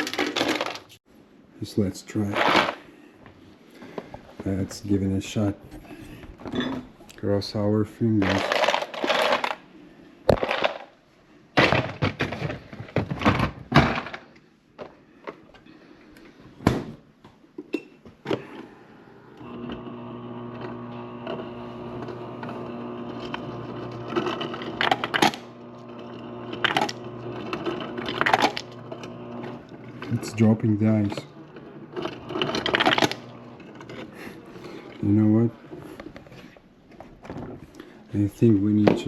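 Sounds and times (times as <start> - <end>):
ice cubes clattering: 0.0 - 1.0, 8.1 - 9.7, 10.3 - 10.9, 24.0 - 25.5, 26.5 - 28.8, 32.0 - 34.1
dispenser motor humming: 19.3 - 35.7.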